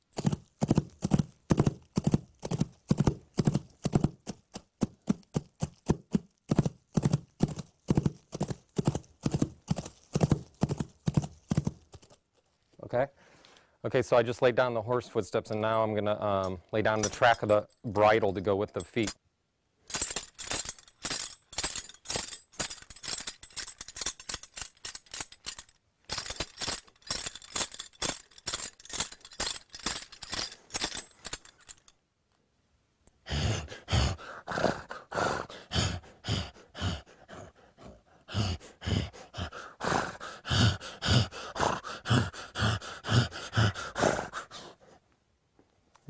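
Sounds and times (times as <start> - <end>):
metal bridle tack jingling: 0.0 - 12.2, 16.4 - 19.2, 19.9 - 32.0
hoof clops: 0.1 - 12.2.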